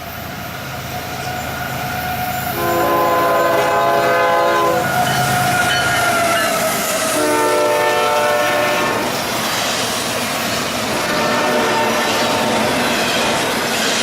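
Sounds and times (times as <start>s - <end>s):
train wheels on rails: 0.0s - 14.0s
locomotive air horn: 2.4s - 9.2s, 10.9s - 12.6s.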